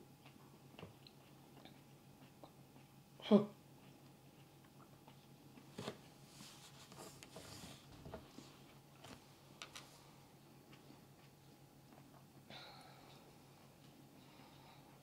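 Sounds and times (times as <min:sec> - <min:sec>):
chewing and mouth noises: 0:00.1 - 0:05.7.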